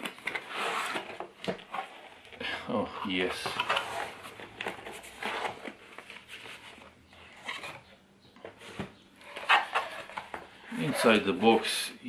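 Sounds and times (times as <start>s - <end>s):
cardboard and packing rustling: 0.0s - 11.8s.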